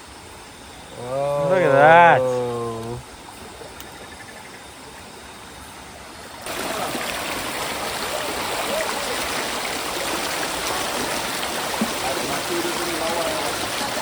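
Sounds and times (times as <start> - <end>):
rushing river water: 6.4 - 14.0.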